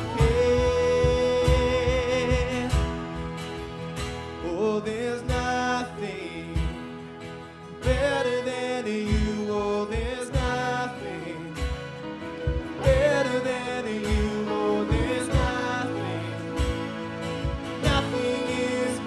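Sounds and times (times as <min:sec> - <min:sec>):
drum beat: 0:00.0 - 0:03.0, 0:10.0 - 0:10.7, 0:12.5 - 0:13.2, 0:14.1 - 0:15.8, 0:17.4 - 0:18.2
person singing: 0:00.0 - 0:03.3, 0:07.8 - 0:19.0
worship band playing: 0:00.0 - 0:19.0.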